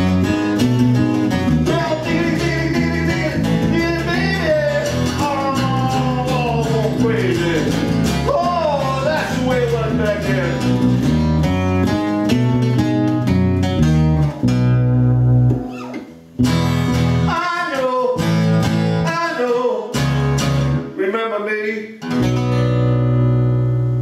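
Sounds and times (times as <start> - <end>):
acoustic guitar strumming: 0.0 - 21.0, 22.0 - 24.0
person singing: 1.5 - 10.9, 17.3 - 20.0.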